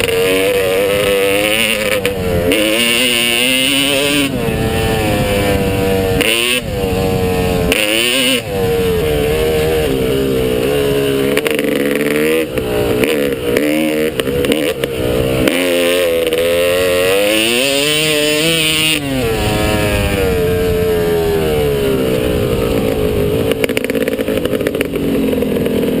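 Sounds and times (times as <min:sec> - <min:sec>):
motocross bike engine revving: 0:00.0 - 0:26.0.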